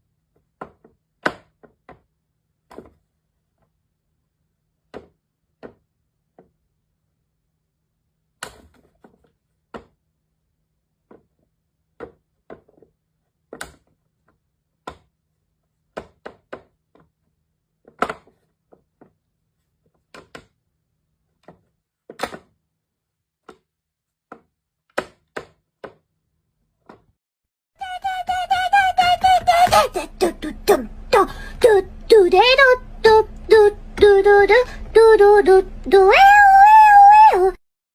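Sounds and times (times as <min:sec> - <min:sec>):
faint low hum: 0:27.8 - 0:37.6.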